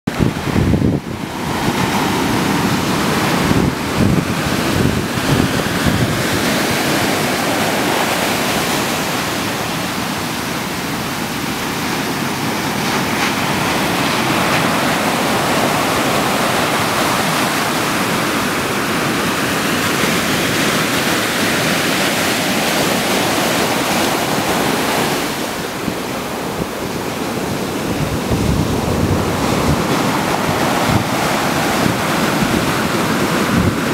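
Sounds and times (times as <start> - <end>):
waves rushing: 0.1 - 33.9
wind buffeting microphone: 0.1 - 33.9.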